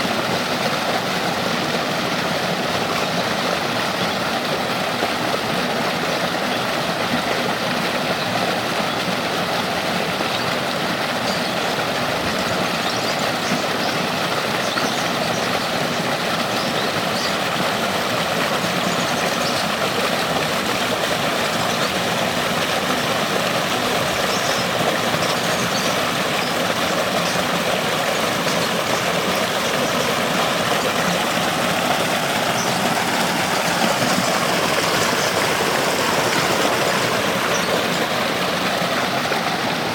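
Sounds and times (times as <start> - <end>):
creek water rushing: 0.0 - 39.9.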